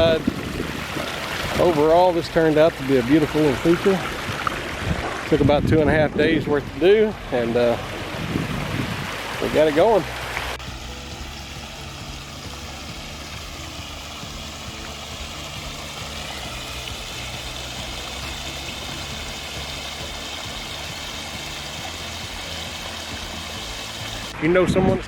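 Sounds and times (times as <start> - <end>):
water cascading over rocks: 0.0 - 25.0
low engine hum: 6.0 - 24.4.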